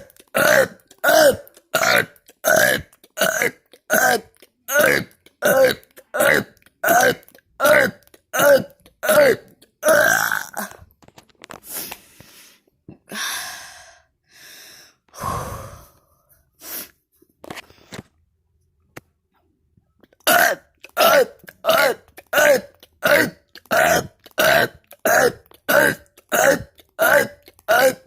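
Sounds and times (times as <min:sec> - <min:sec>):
person burping: 0:00.0 - 0:10.9, 0:20.0 - 0:28.0
breathy gasps and exhales: 0:10.6 - 0:18.1.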